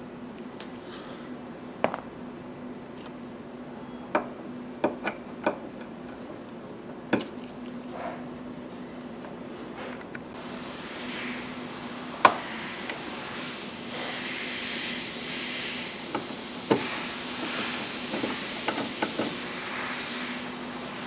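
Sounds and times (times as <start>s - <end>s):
steady low hum: 7.7s - 21.0s
faint hiss: 10.4s - 21.0s.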